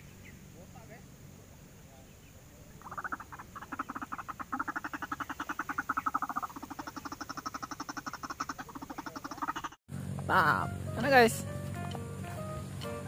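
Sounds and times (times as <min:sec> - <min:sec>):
waterhen calling: 0:02.8 - 0:09.8.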